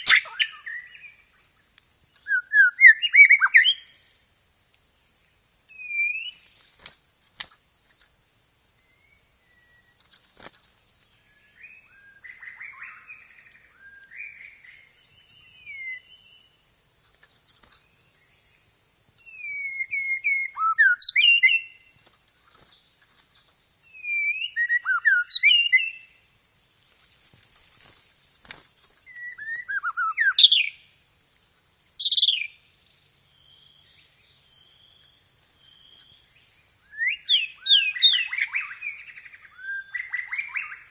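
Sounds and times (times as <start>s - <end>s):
bird singing whistled notes: 0.0s - 1.4s, 2.2s - 4.0s, 5.7s - 6.6s, 8.8s - 10.0s, 11.1s - 16.6s, 19.2s - 21.9s, 23.3s - 26.2s, 29.0s - 30.9s, 32.0s - 32.6s, 33.2s - 40.9s.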